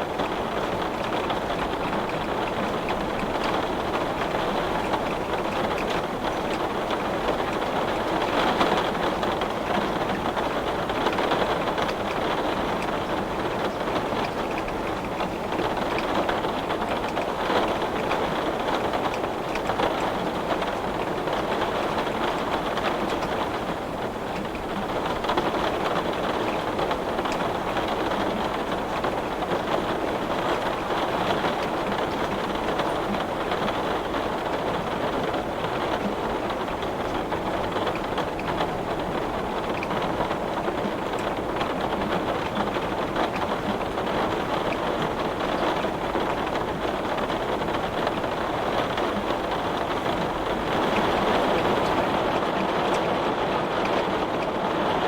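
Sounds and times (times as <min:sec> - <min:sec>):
heavy rain on a glass window: 0:00.0 - 0:55.0.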